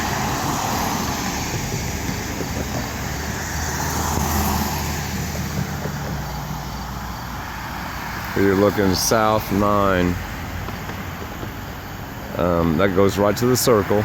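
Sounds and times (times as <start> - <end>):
tyre noise: 0.0 - 7.6
cars passing: 0.0 - 14.0
engine low rumble: 0.0 - 14.0.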